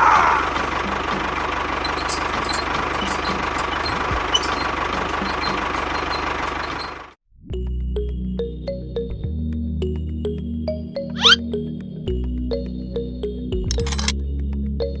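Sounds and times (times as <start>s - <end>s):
music: 0.0s - 15.0s
small motor ticking: 1.8s - 7.1s
sharp clicks: 13.7s - 14.2s.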